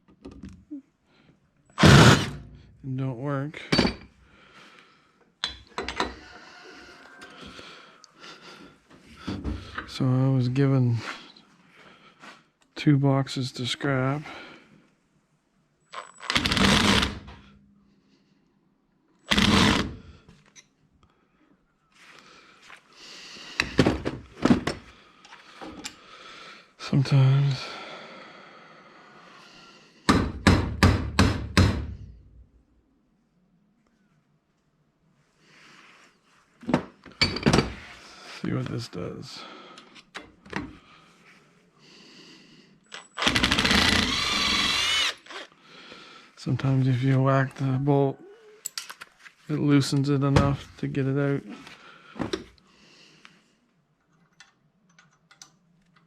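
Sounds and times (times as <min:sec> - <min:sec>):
power tool rattling and whining: 0:01.8 - 0:02.4, 0:16.0 - 0:17.4, 0:19.3 - 0:20.0, 0:43.2 - 0:45.5.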